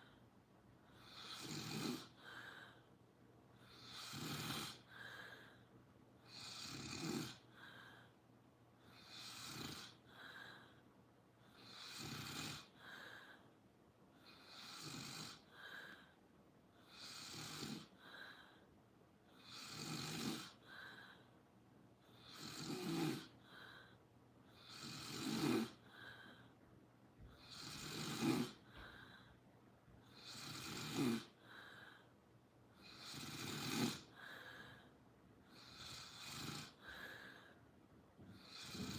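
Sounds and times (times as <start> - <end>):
person snoring: 1.0 - 2.8, 3.6 - 5.5, 6.3 - 7.8, 8.9 - 10.4, 11.6 - 13.3, 14.2 - 16.1, 16.8 - 18.1, 19.4 - 20.8, 22.2 - 23.5, 24.6 - 26.4, 27.3 - 29.0, 30.1 - 32.0, 32.8 - 34.8, 35.5 - 37.6, 38.3 - 38.9.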